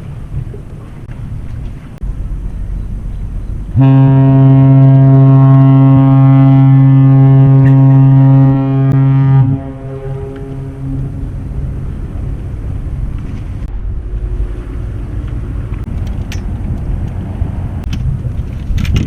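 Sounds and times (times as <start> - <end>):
low wind-like rumbling: 0.0 - 19.0
loud low horn blast: 3.7 - 11.6.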